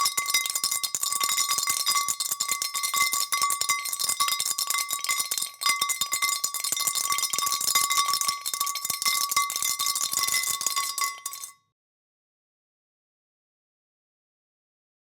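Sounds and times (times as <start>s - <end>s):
bell noisemaker ringing: 0.0s - 11.5s.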